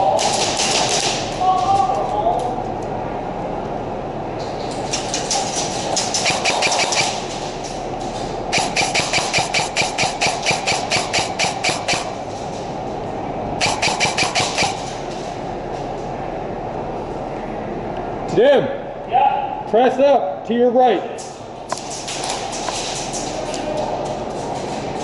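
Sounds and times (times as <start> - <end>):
airsoft guns firing automatic bursts: 5.3 - 7.4, 8.5 - 12.2, 13.6 - 14.9.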